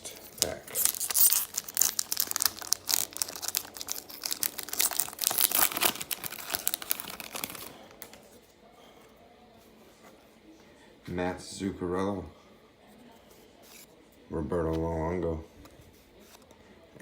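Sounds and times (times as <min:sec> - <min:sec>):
wrapper torn open and crinkled: 0:00.2 - 0:08.2.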